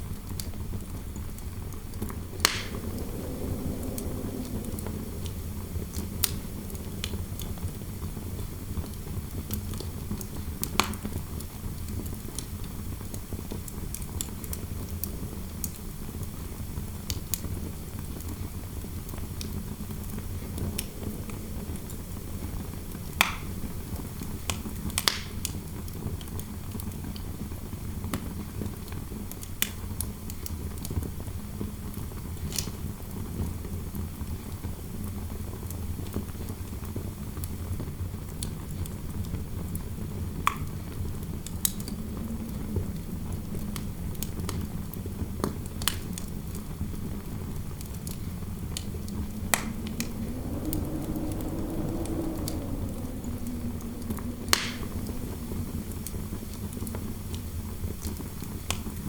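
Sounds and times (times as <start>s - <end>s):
low fire rumble: 0.8s - 26.4s, 35.4s - 59.0s
wind noise: 1.8s - 10.2s, 14.6s - 25.3s, 38.9s - 45.3s, 47.2s - 59.0s
wood fire crackling: 1.9s - 7.7s, 18.1s - 25.2s, 47.8s - 59.0s
sharp fire pops: 2.4s - 6.4s.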